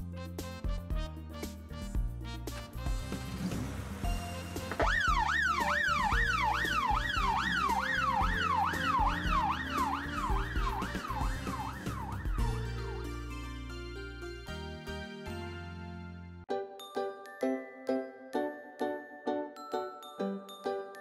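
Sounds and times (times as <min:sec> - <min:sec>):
background music with low beat: 0:00.0 - 0:14.0
emergency siren yelping: 0:04.6 - 0:13.4.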